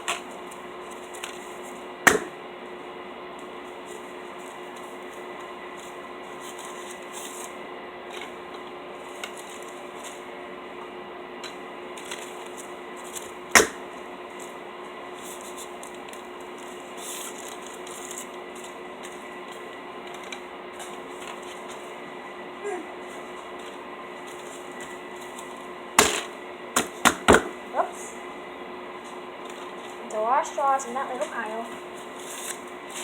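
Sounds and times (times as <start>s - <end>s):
paper wrappers tearing and rustling: 0.1s - 1.8s, 3.7s - 8.4s, 9.0s - 10.3s, 11.9s - 13.4s, 14.3s - 22.0s, 31.1s - 33.0s
sharp knock: 2.1s - 2.3s, 13.6s - 13.8s.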